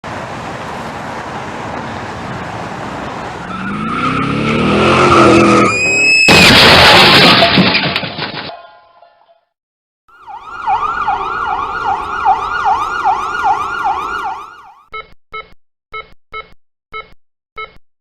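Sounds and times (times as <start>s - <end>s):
car engine revving: 3.4s - 5.7s
loud car crash: 3.6s - 8.5s.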